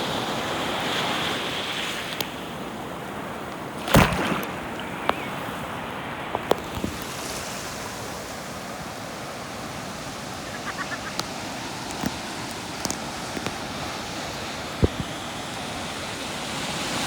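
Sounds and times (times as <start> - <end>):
surf washing in: 0.0 - 17.0
faint sharp clicks: 10.4 - 13.6.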